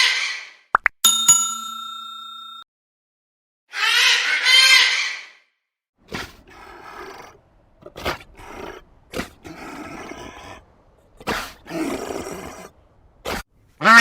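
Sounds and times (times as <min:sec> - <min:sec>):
animal calling in rough bursts: 0:06.0 - 0:14.0.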